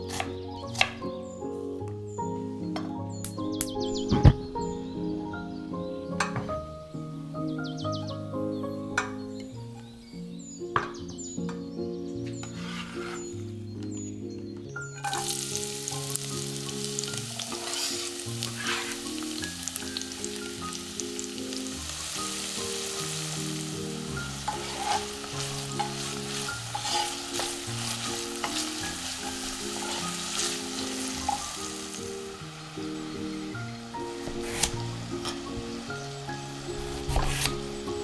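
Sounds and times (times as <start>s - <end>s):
soft background music: 0.0s - 38.0s
food sizzling in oil: 15.0s - 38.0s.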